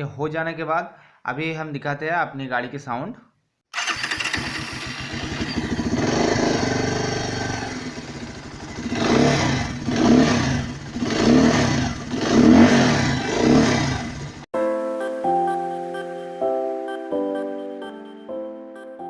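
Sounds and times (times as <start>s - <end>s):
motorcycle engine idling: 3.8s - 14.4s.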